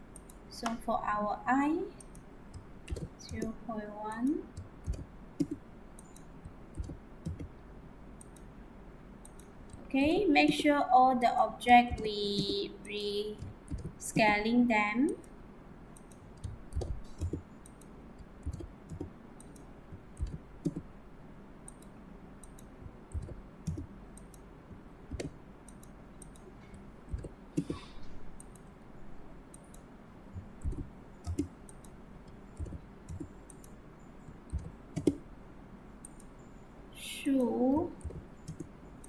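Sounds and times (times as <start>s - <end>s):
mouse and keyboard clicks: 2.0s - 7.5s, 8.2s - 8.5s, 9.2s - 14.4s, 16.0s - 20.9s, 21.7s - 28.7s, 29.5s - 35.3s, 36.0s - 36.6s, 37.3s - 39.0s.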